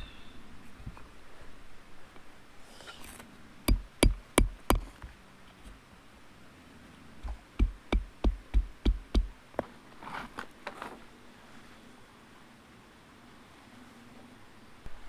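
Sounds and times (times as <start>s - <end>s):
hammer striking wood: 3.7s - 4.9s, 7.2s - 9.3s.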